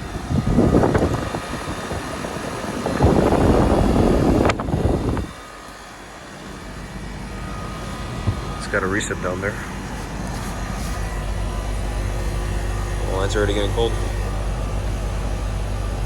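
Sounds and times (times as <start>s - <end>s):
air conditioner compressor running: 0.0s - 16.0s.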